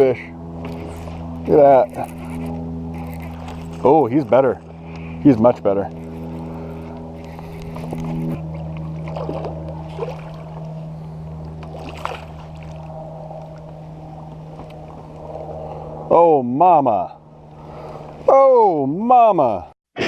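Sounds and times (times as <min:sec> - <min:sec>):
low motor hum: 0:00.0 - 0:19.7
faint splashes: 0:08.5 - 0:10.7, 0:11.6 - 0:13.6.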